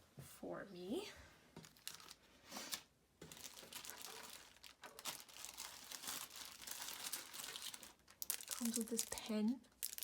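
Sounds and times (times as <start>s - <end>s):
packaging crinkling and rustling: 1.6s - 10.0s.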